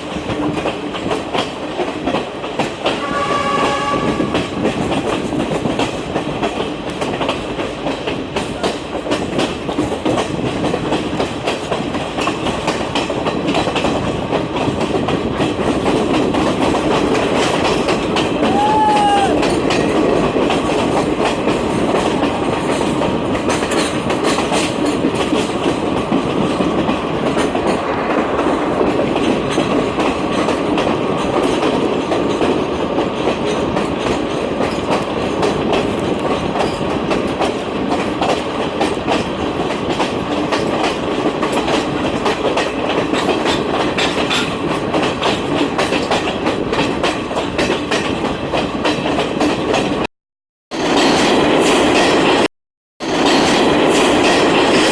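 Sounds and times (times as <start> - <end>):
train carriage rumble: 0.0 - 50.1, 50.7 - 54.9
train wheels clicking on rails: 0.0 - 50.1, 50.8 - 54.9.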